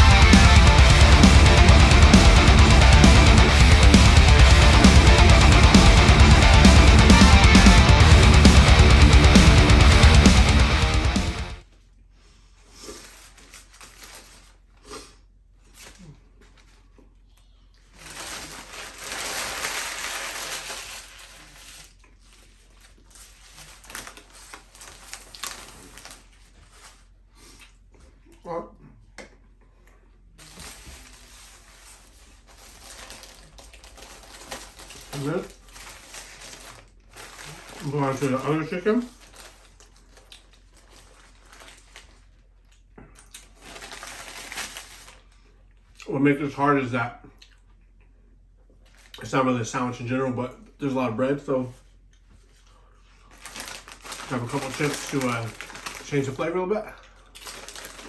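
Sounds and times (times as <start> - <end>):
food wrapper crumpling: 12.7 - 27.8, 30.4 - 46.0, 48.7 - 49.2, 52.0 - 58.0
person chewing: 14.2 - 17.9, 27.4 - 28.4, 42.6 - 43.8.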